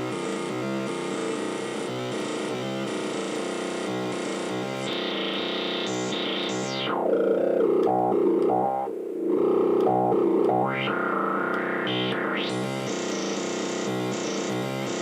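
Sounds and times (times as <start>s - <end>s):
synthesizer chord stabs: 3.8s - 8.9s, 9.8s - 15.0s.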